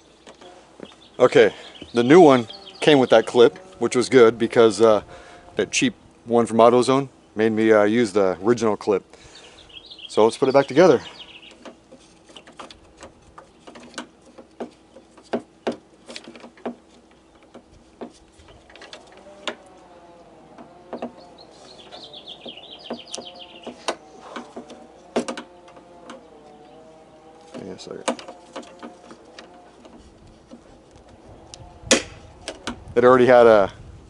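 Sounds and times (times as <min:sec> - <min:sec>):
bird chirping trill: 0:00.8 - 0:03.7, 0:09.2 - 0:12.7, 0:18.4 - 0:30.6
small parts clicking and knocking: 0:27.4 - 0:32.8.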